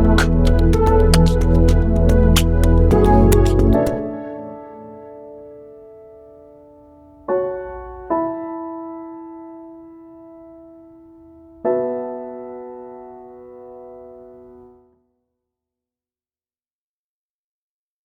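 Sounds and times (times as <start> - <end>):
slow sustained keyboard chords: 0.0 - 5.8.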